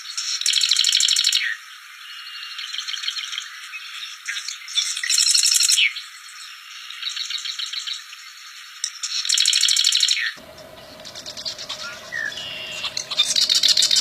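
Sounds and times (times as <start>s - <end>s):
bird rattling calls: 10.4s - 14.0s
faint bird trilling: 10.4s - 14.0s.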